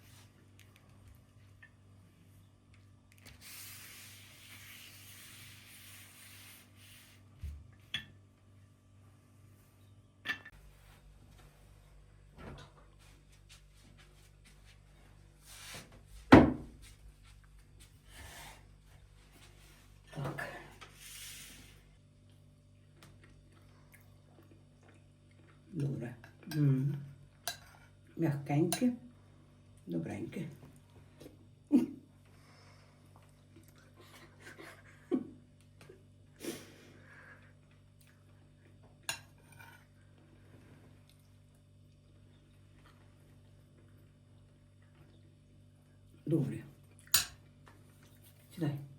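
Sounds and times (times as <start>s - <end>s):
faint low hum: 0.0s - 48.9s
faint chewing: 22.2s - 26.6s, 33.0s - 34.4s, 37.0s - 46.1s.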